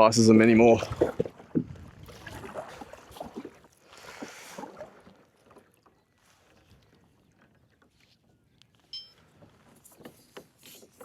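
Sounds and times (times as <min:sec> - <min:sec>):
kayak paddle splashing water: 0:00.4 - 0:08.0.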